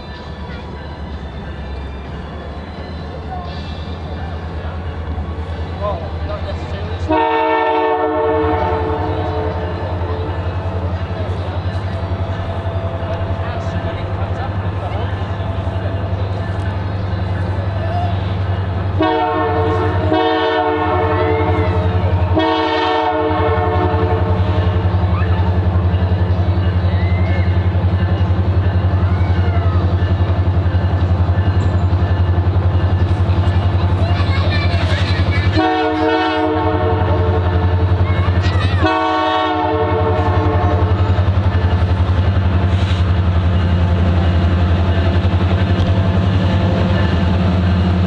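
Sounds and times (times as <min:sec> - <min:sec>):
locomotive engine rumble: 0:00.0 - 0:48.0
locomotive air horn: 0:07.1 - 0:11.0, 0:17.8 - 0:25.0, 0:35.5 - 0:37.8, 0:38.7 - 0:41.0.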